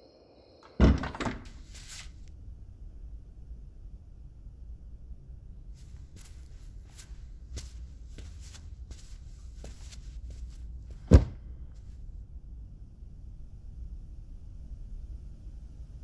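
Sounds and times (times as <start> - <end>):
heavy thump: 0.7 - 2.2, 5.8 - 11.9
soft rustling and scuffing: 1.1 - 2.3, 5.8 - 12.0.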